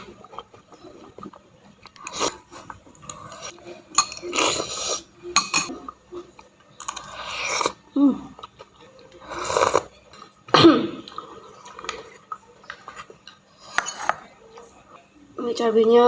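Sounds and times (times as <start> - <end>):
noisy eating sounds: 0.0 - 16.0
metal utensils clinking on bowl: 1.8 - 5.9, 6.8 - 7.2.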